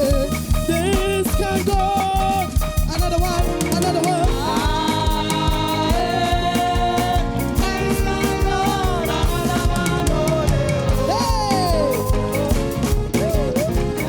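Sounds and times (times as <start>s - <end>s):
gospel praise band music: 0.0s - 14.0s.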